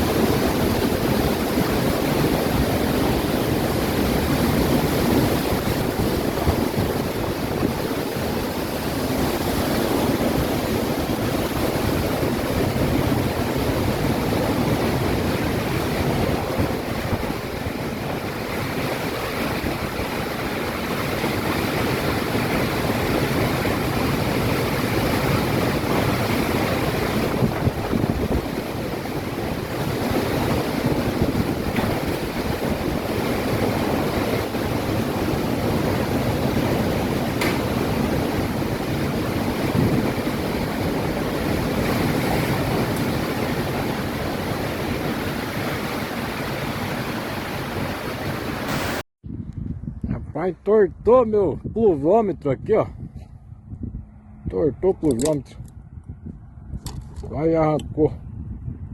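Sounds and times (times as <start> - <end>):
wind buffeting microphone: 0.0 - 58.9
heavy rain: 9.9 - 49.0.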